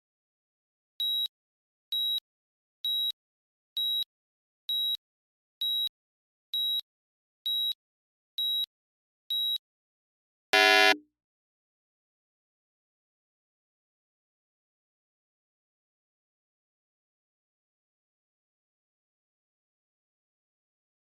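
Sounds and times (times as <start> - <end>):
low buzzer tone: 10.6 - 11.0
short high timer beeps: 10.6 - 11.0.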